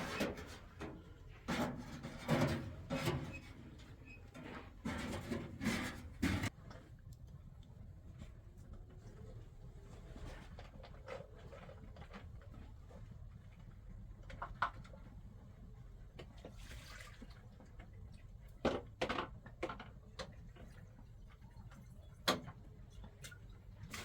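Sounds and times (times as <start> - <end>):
water pouring or splashing: 16.5 - 17.9.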